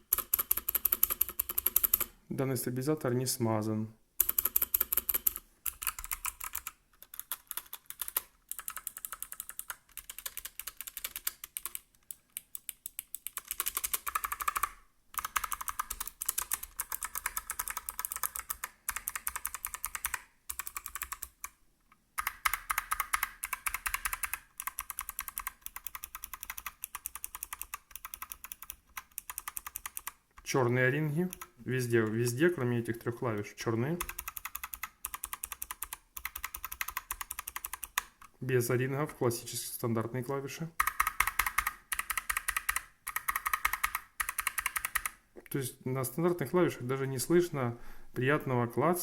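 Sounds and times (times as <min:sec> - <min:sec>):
mechanical keyboard typing: 0:00.0 - 0:02.1, 0:04.2 - 0:21.6, 0:22.2 - 0:30.5, 0:31.2 - 0:31.6, 0:34.0 - 0:38.3, 0:40.8 - 0:45.2.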